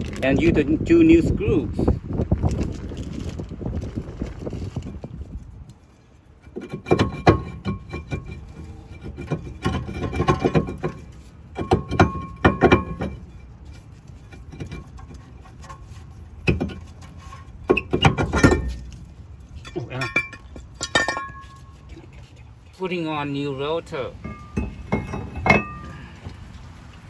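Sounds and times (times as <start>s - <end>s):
metal parts clanking and clinking: 4.5s - 22.2s, 24.0s - 26.5s.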